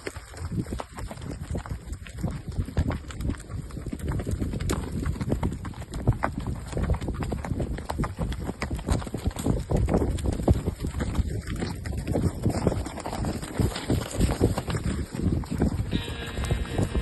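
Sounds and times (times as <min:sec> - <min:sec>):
horse hoofbeats: 0:00.0 - 0:17.0.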